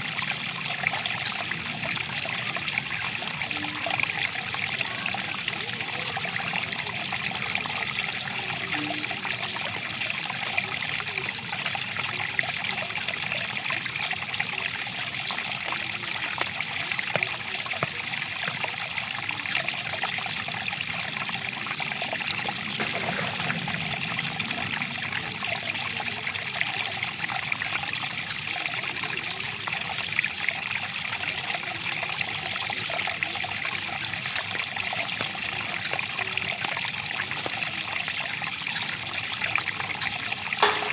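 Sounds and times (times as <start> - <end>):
stream water babbling over stones: 0.0 - 40.9.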